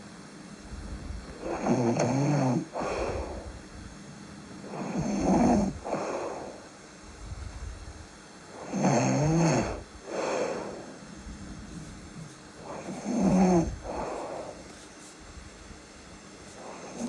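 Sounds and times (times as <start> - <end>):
person snoring: 1.3 - 3.5, 4.6 - 6.7, 8.5 - 11.0, 12.6 - 14.6, 16.6 - 17.0.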